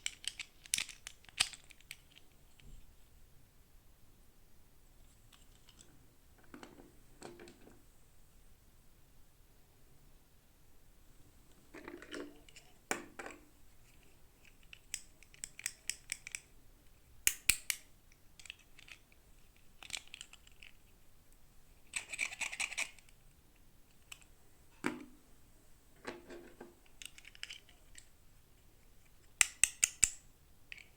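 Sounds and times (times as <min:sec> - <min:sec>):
sharp plastic clicks: 0:29.3 - 0:30.9.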